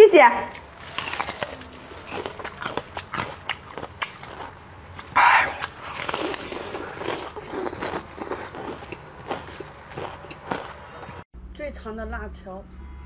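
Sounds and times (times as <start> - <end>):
person chewing and biting: 0.5 - 11.2
small crunchy clicks: 0.5 - 11.2
breathy burst: 5.1 - 7.0.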